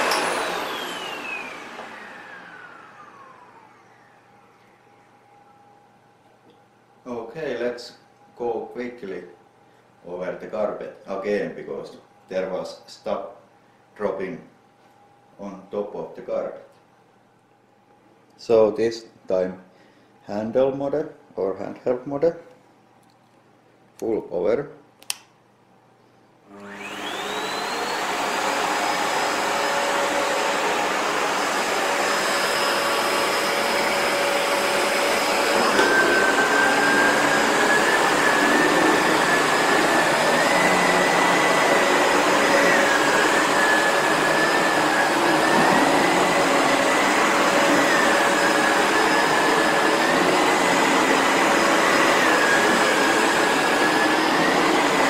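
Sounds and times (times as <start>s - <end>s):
vacuum cleaner motor whine: 0.0s - 6.0s, 26.5s - 55.0s.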